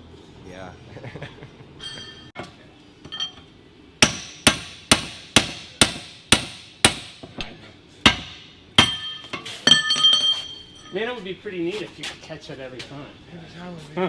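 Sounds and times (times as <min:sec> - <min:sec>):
hammer striking metal on anvil: 0:04.0 - 0:11.0.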